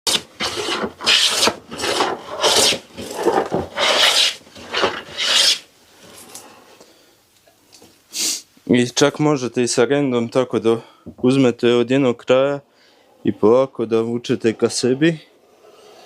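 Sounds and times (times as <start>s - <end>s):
hand plane shaving wood: 0.1s - 5.6s.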